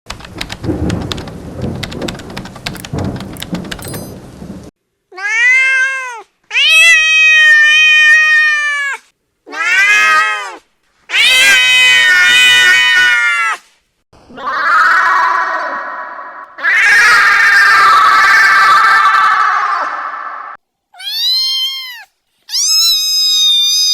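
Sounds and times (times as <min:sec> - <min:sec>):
rain: 0:00.1 - 0:04.7
thunder: 0:00.1 - 0:04.8
cat meowing angrily: 0:05.1 - 0:13.7, 0:14.3 - 0:19.9, 0:21.0 - 0:23.9.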